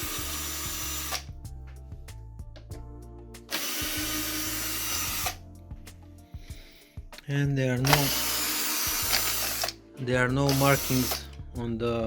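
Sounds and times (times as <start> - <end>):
power tool whirring: 0.0 - 1.3, 3.5 - 5.4, 7.8 - 9.8, 10.5 - 11.4
background music: 0.0 - 12.0.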